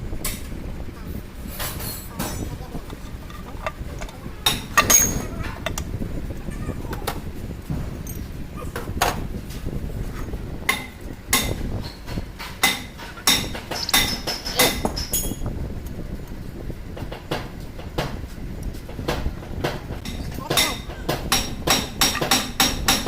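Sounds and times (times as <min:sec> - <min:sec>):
hammer clanking on metal: 0:01.6 - 0:05.8, 0:10.7 - 0:15.4, 0:19.1 - 0:23.0.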